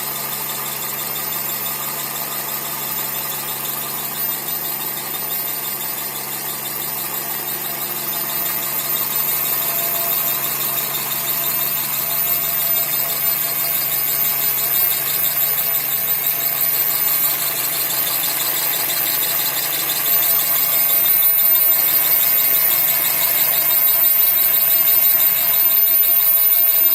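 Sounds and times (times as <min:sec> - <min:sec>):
high-pitched whistle: 0:00.2 - 0:26.9.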